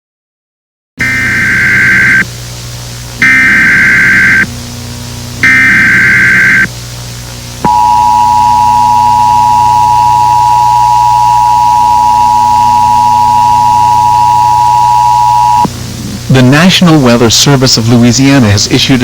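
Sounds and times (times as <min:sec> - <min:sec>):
buzzing digital data burst: 0:01.0 - 0:02.3, 0:03.2 - 0:04.5, 0:05.4 - 0:06.7
steady two-tone alert signal: 0:01.0 - 0:02.3, 0:03.2 - 0:04.5, 0:05.4 - 0:06.7, 0:07.7 - 0:15.7.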